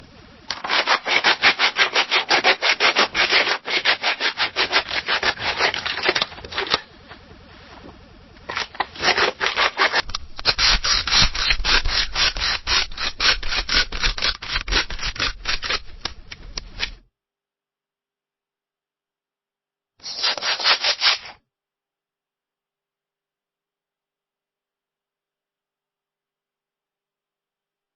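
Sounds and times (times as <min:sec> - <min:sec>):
scissors snipping paper: 0:08.5 - 0:16.9, 0:20.0 - 0:21.4.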